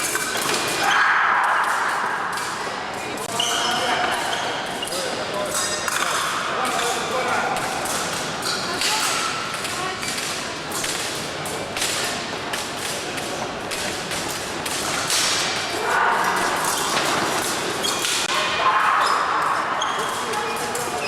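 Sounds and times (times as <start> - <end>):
fencers' footwork stamps: 7.5 - 15.6.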